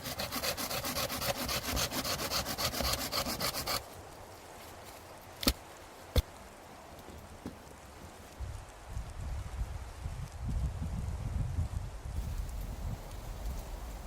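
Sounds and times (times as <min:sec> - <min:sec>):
hand saw cutting wood: 0:00.0 - 0:03.9.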